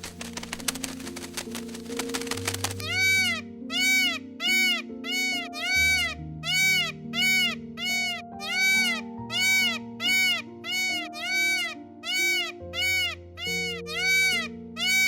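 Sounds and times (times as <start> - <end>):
high rising and falling call: 2.8 - 15.0.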